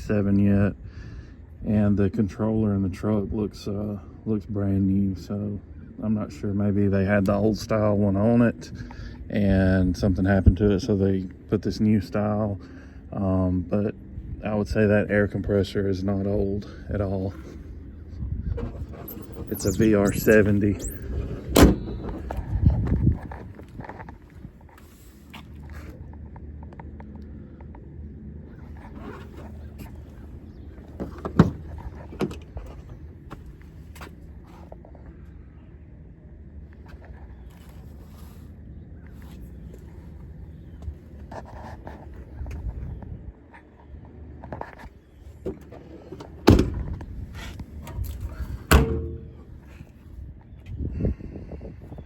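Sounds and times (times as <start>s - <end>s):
steady low rumble: 0.0s - 36.8s
metal compartment doors banging: 18.5s - 23.0s, 30.8s - 32.8s, 45.5s - 47.0s, 47.8s - 49.6s
sharp thump: 48.7s - 49.4s.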